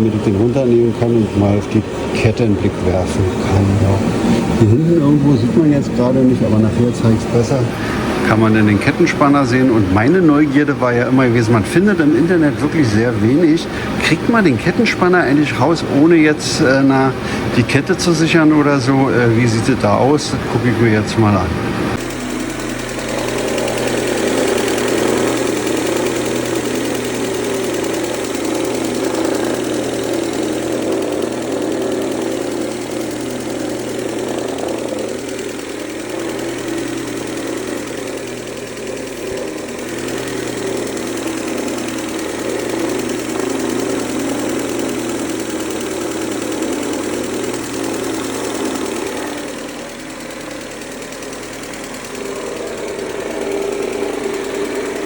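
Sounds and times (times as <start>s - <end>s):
car engine running: 0.0s - 55.0s.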